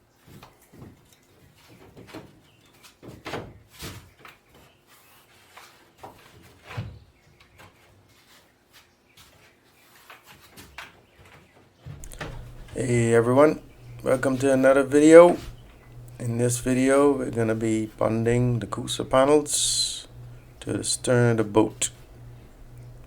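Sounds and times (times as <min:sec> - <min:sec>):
faint knocks and clunks: 0:12.0 - 0:14.1.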